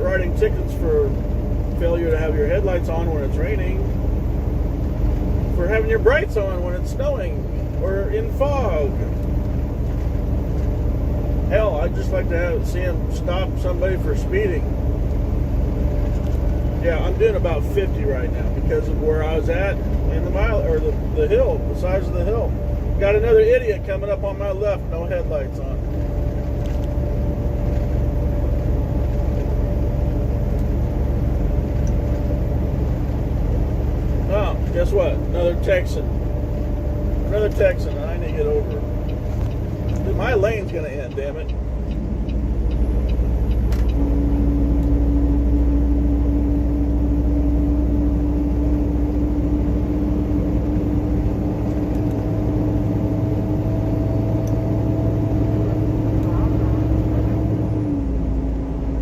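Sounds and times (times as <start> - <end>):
road noise inside cab: 0.0 - 59.0
steady whine: 0.0 - 59.0
truck engine rumble: 0.0 - 59.0
higher whine: 10.6 - 59.0.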